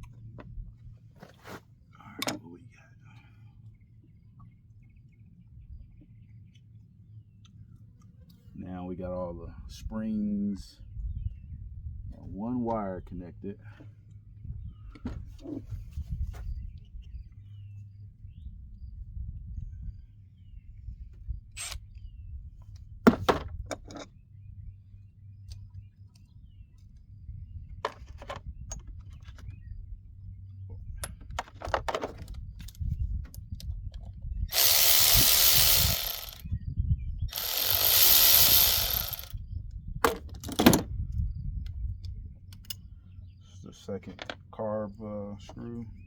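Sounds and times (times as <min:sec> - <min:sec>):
power drill whirring: 0:34.5 - 0:36.5, 0:37.3 - 0:39.4.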